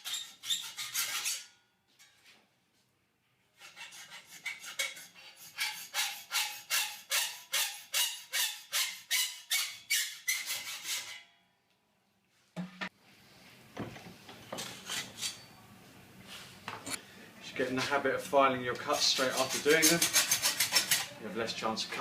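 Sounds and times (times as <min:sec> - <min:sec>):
hacksaw cutting metal: 0:00.0 - 0:01.5, 0:03.6 - 0:11.2, 0:18.9 - 0:21.2.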